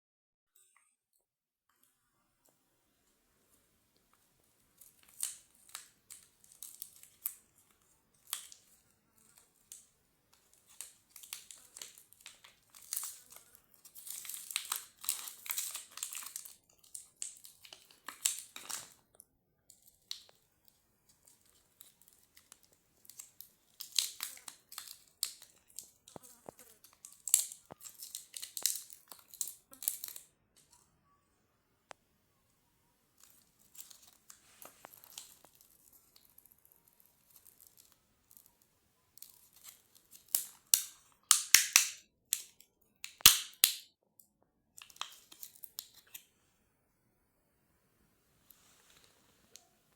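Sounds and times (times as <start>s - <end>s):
plastic wrappers crackling: 4.6s - 19.0s, 19.8s - 30.3s, 33.2s - 43.8s.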